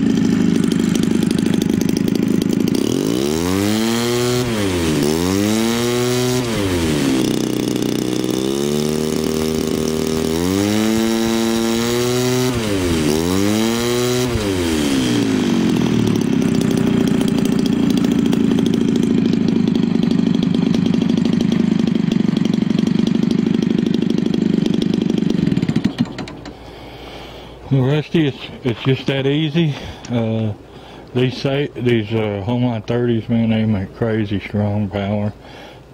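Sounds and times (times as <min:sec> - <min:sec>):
two-stroke engine revving: 0:00.0 - 0:26.5.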